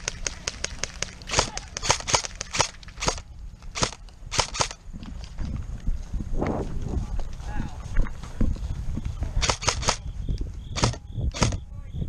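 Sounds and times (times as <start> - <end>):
airsoft guns firing: 0.0 - 3.2, 3.8 - 4.8, 9.4 - 10.0, 10.8 - 11.6.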